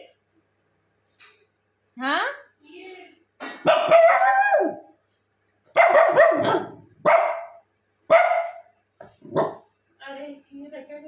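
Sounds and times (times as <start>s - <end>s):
dog barking: 3.6s - 5.0s, 5.7s - 9.7s.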